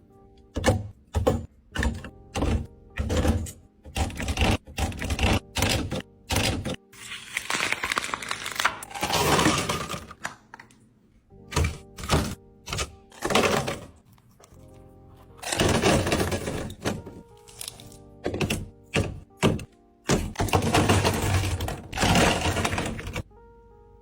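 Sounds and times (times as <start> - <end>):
quiet background music: 0.0 - 24.0
containers clacking and knocking: 0.5 - 6.8, 8.8 - 10.8, 11.5 - 14.0, 15.4 - 23.3
continuous clattering: 15.4 - 17.3, 18.3 - 23.2.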